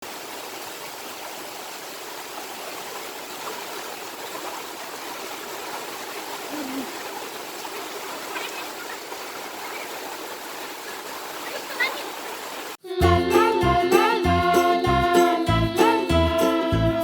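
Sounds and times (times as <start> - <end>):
rain falling steadily: 0.0 - 12.8.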